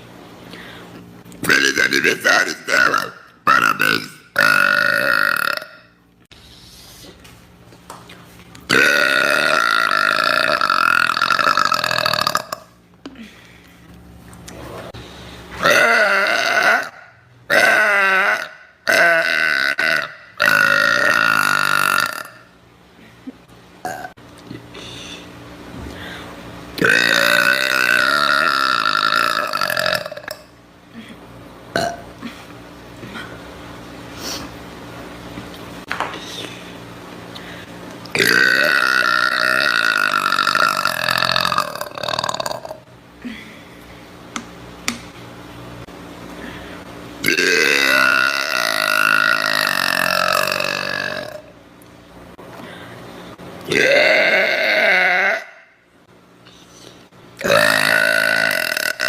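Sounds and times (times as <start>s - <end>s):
woman burping loudly: 1.6s - 6.0s, 8.7s - 13.3s, 15.6s - 22.5s, 23.8s - 24.2s, 26.8s - 30.5s, 31.7s - 32.4s, 38.1s - 43.4s, 47.2s - 51.6s, 53.6s - 55.8s, 57.4s - 59.0s.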